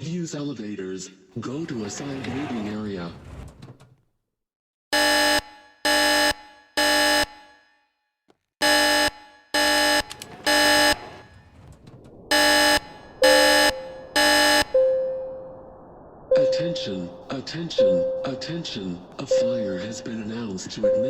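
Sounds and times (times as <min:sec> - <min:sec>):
fire alarm horn blasts: 0:04.9 - 0:07.7, 0:08.6 - 0:11.3, 0:12.3 - 0:15.6.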